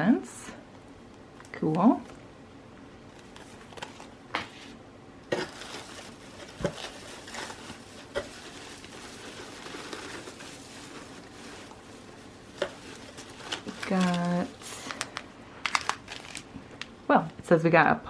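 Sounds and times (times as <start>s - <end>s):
wrapping rustling and crinkling: 3.0s - 17.0s.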